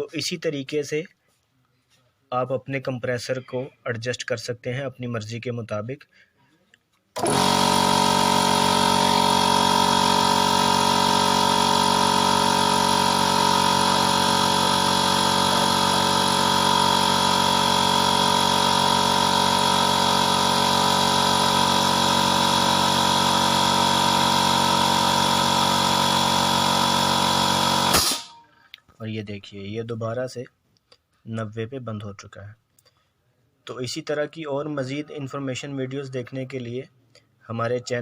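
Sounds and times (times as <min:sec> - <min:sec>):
air compressor running: 0:07.2 - 0:28.5.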